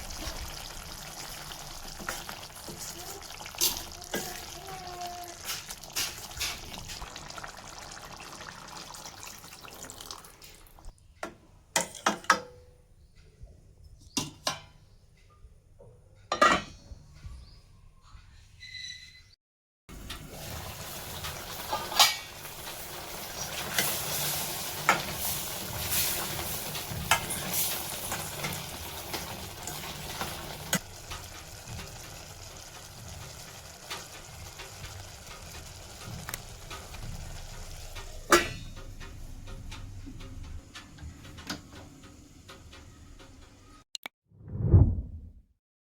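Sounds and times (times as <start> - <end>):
gravy sizzling in a pan: 0.0 - 10.9, 19.9 - 39.0
spoon clinking and scraping pan: 21.6 - 22.4.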